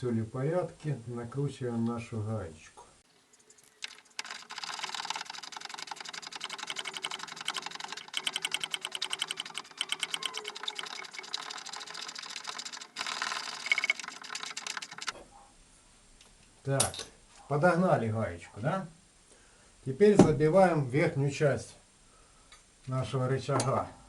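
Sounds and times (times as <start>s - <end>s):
ratchet wrench clicking: 3.6s - 15.1s.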